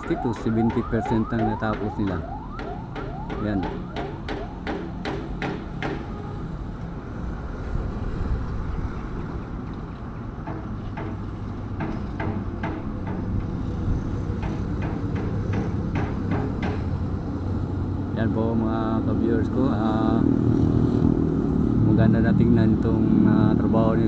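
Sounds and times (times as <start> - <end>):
rapid sharp knocking: 0.0 - 6.2, 10.4 - 17.0.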